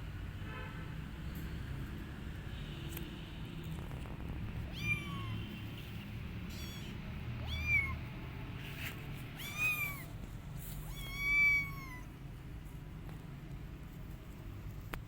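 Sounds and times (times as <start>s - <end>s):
kitten meowing: 4.7s - 5.6s, 6.5s - 8.0s, 9.3s - 10.2s, 10.8s - 12.1s.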